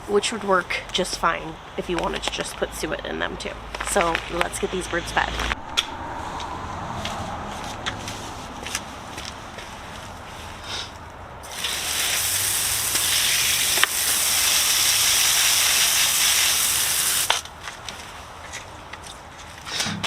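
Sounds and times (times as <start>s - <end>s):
hose nozzle spraying water: 11.4s - 17.4s.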